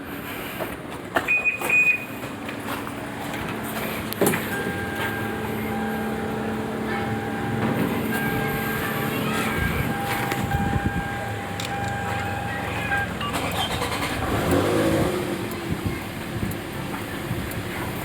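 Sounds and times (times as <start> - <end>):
car engine starting and idling: 0.0 - 18.0
short beep: 1.2 - 2.2, 4.3 - 13.8.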